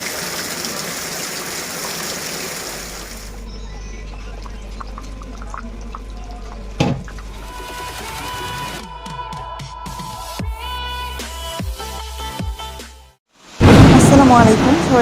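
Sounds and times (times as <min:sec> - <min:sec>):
heavy rain hissing: 0:13.4 - 0:15.0.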